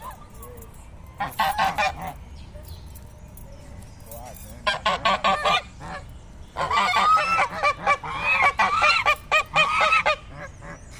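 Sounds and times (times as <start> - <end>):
geese honking: 1.2 - 2.2, 4.6 - 10.9.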